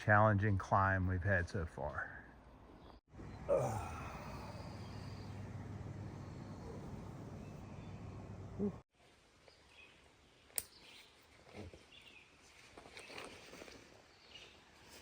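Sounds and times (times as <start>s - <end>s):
outdoor noise: 0.0s - 15.0s
faint bird chirps: 2.8s - 5.5s.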